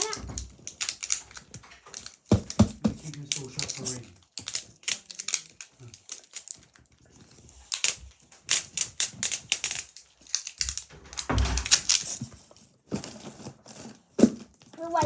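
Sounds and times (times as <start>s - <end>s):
packaging clicking and crackling: 0.0s - 15.0s
packaging rustling: 0.0s - 15.0s.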